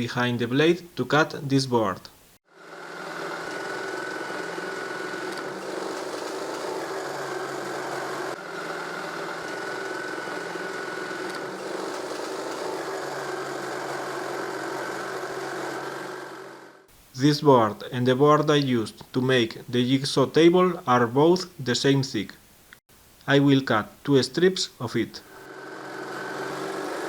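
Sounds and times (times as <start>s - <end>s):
jigsaw cutting board: 2.6s - 16.8s, 25.4s - 27.0s.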